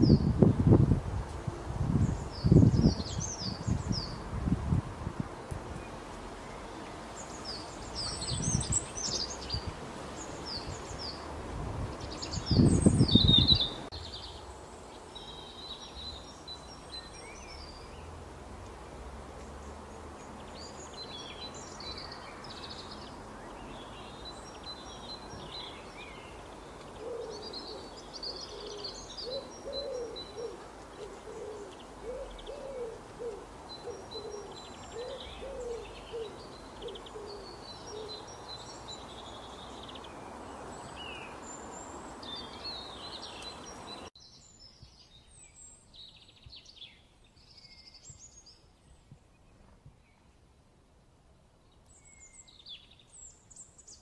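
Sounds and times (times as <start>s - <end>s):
background hiss: 0.0s - 54.0s
birds chirping: 11.9s - 18.2s, 19.4s - 50.5s.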